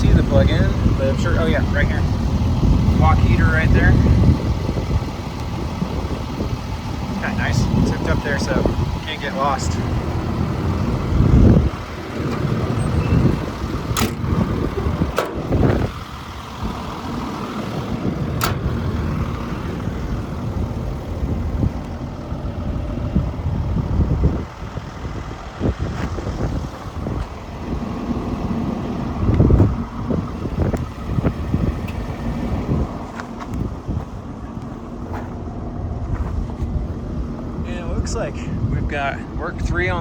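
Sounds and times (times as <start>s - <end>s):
excavator diesel engine idling: 0.0s - 40.0s
sharp clicks and knocks: 13.9s - 14.3s, 15.1s - 15.8s, 18.4s - 18.8s.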